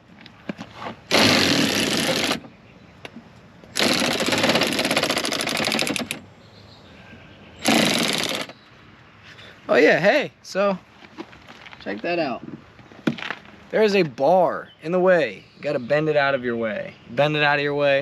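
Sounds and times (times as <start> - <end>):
power tool rattling buzz: 1.1 - 2.5, 3.8 - 6.2, 7.6 - 8.6.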